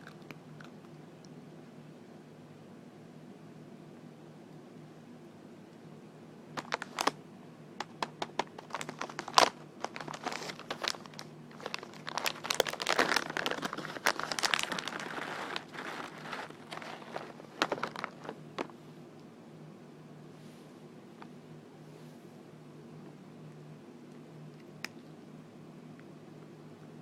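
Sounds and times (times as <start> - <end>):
wrapping crinkling by hand: 6.6 - 7.2, 7.8 - 18.7.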